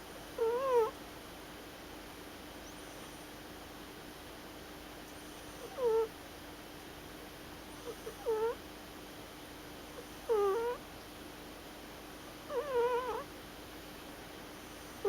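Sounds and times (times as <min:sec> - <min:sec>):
cat snoring with squeaky breaths: 0:00.4 - 0:01.0, 0:05.2 - 0:06.2, 0:07.7 - 0:08.6, 0:09.9 - 0:10.8, 0:12.5 - 0:13.3, 0:14.5 - 0:15.0.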